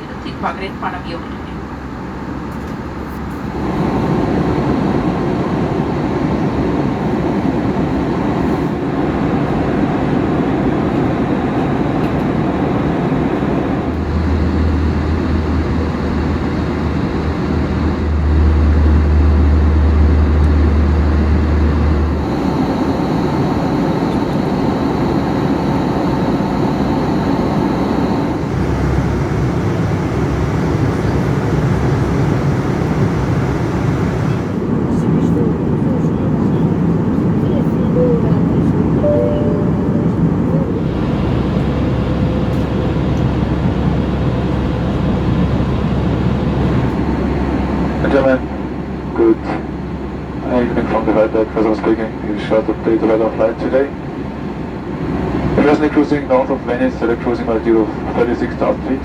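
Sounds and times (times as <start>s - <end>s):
airliner cabin engine roar: 0.0s - 59.0s
low droning hum: 13.8s - 36.6s.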